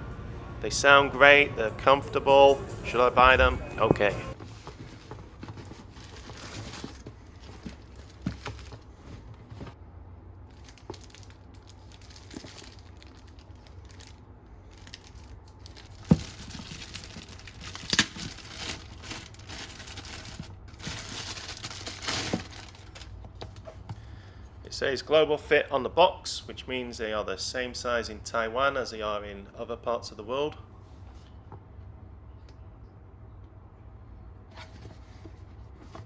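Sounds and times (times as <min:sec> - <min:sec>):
packaging crinkling and tearing: 0:04.4 - 0:09.8, 0:10.5 - 0:23.9.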